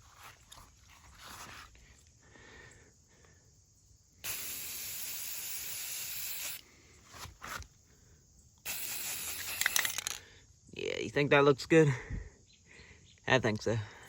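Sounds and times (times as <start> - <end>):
spray paint can hissing: 4.2 - 6.6, 8.6 - 10.2.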